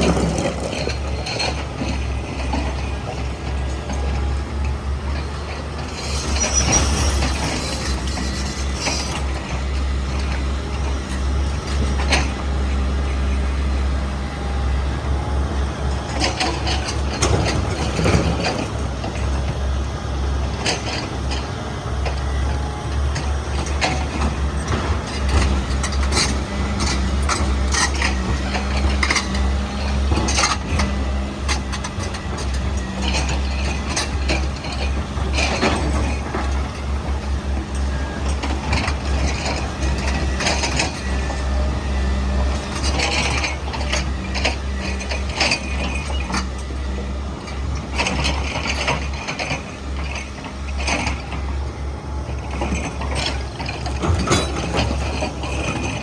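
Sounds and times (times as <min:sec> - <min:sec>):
excavator diesel engine droning: 0:00.0 - 0:56.0.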